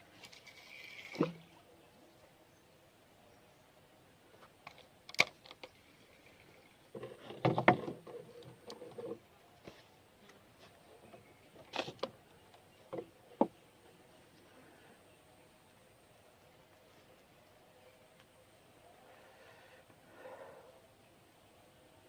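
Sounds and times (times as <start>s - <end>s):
thumps and rattles: 7.0s - 8.2s
objects knocking and rattling: 7.0s - 9.2s.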